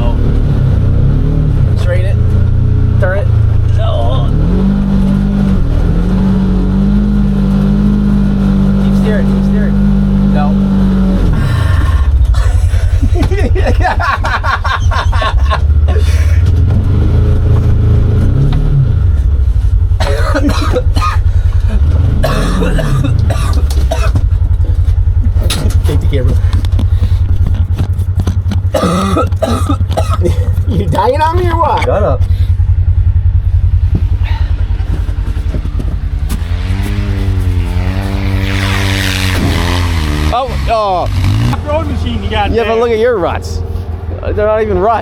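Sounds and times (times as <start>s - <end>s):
utility vehicle engine revving: 0.0s - 45.0s
voice or cough: 20.0s - 24.2s, 28.7s - 31.3s.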